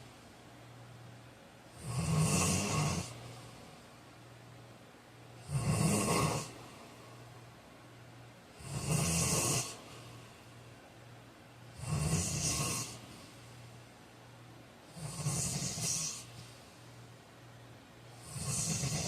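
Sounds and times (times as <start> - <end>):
faint low hum: 0.0 - 19.0
man snoring: 1.8 - 3.2, 5.4 - 6.6, 8.6 - 9.8, 11.7 - 13.0, 14.9 - 16.3, 18.2 - 19.0.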